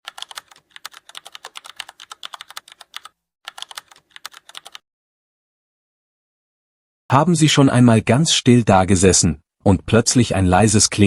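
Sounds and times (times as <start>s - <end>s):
rapid computer keyboard typing: 0.0s - 4.8s.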